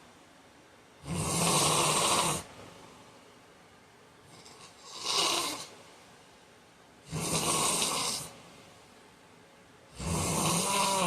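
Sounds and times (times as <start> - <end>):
man snoring: 1.0 - 2.5, 4.4 - 5.7, 7.1 - 8.4, 9.9 - 11.0.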